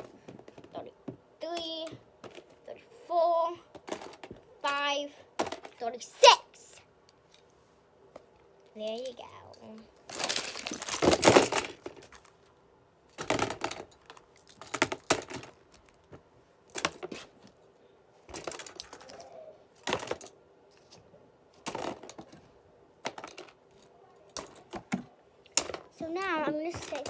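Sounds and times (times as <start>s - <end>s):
toys clicking and clattering: 0.0s - 2.8s, 3.7s - 6.3s, 8.6s - 12.3s, 13.2s - 16.0s, 18.3s - 20.4s, 23.0s - 27.0s.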